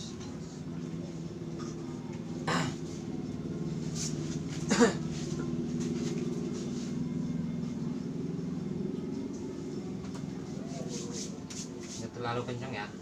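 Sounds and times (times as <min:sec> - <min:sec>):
steady low hum: 0:00.0 - 0:13.0
person coughing: 0:02.4 - 0:02.8, 0:04.7 - 0:05.1.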